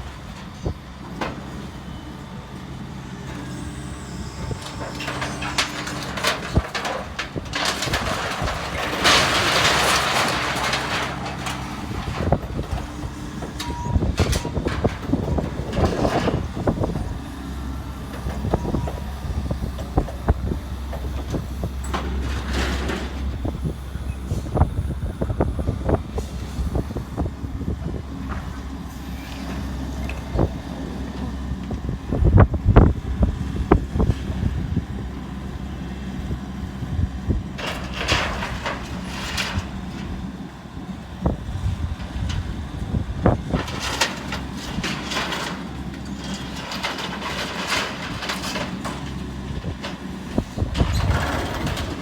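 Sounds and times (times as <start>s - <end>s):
excavator diesel engine: 0.0s - 52.0s
debris crunching and clattering: 4.5s - 17.2s, 37.6s - 40.3s, 43.2s - 52.0s.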